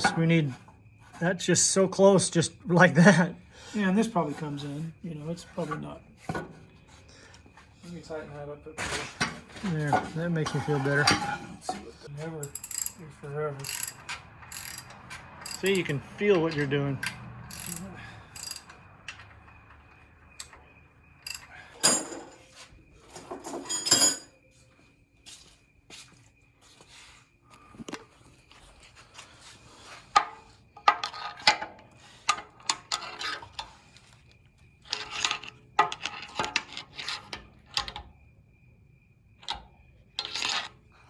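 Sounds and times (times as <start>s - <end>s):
metal parts clinking and scraping: 8.8s - 13.0s, 13.6s - 19.4s, 21.2s - 24.3s, 40.2s - 40.8s.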